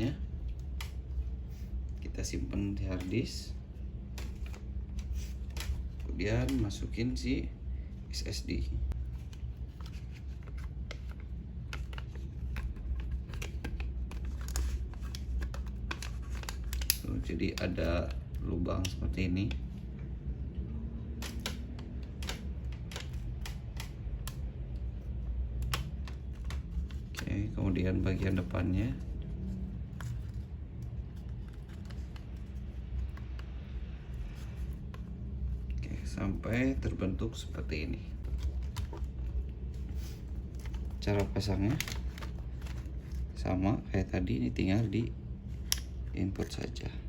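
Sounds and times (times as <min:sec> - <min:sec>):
steady low hum: 0:00.0 - 0:47.0
light clicks and scrapes of parts: 0:21.2 - 0:36.6.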